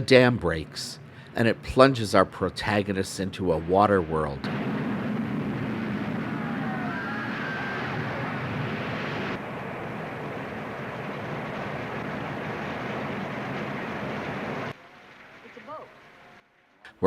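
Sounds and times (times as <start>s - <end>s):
rushing floodwater roar: 6.2s - 16.4s.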